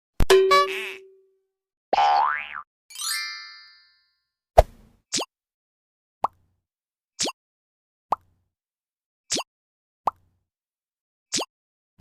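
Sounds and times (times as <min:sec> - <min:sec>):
upward-sliding cartoon bloop: 0:00.3 - 0:01.2.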